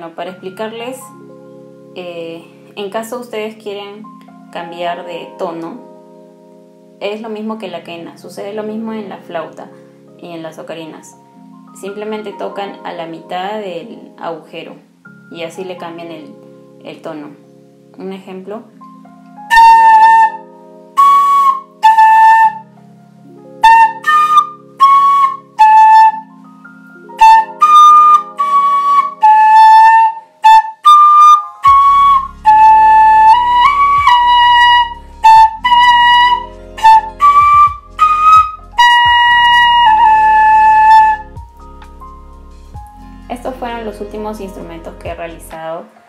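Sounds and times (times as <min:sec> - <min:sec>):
clay flute playing high notes: 0:19.5 - 0:22.7, 0:23.6 - 0:26.4, 0:27.1 - 0:41.4.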